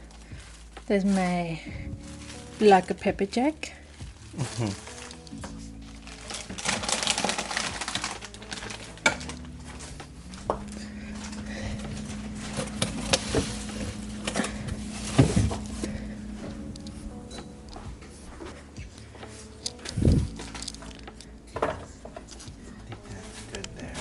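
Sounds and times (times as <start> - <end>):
packaging rustling: 0.0 - 3.0, 3.8 - 17.8, 19.3 - 21.3.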